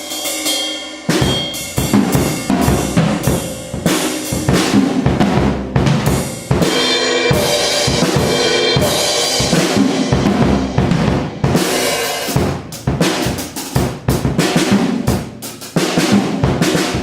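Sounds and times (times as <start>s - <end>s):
drum kit playing: 1.1s - 17.0s
cymbal wash ringing: 6.6s - 12.4s.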